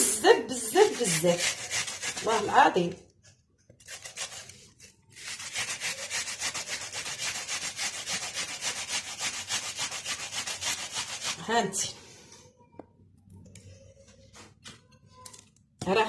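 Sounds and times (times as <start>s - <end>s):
onion grated on grater: 0.1s - 2.8s, 3.8s - 11.5s.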